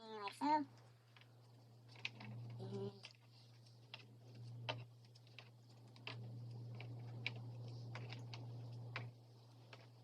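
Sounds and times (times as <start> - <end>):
low steady hum: 0.0 - 10.0
trading cards clicking and tapping: 0.2 - 10.0.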